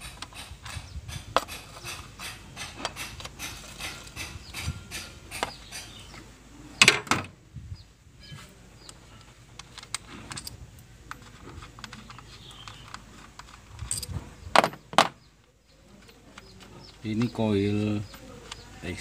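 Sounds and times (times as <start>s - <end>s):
hand tools clattering: 0.0s - 6.2s
sharp clicks: 8.8s - 14.6s.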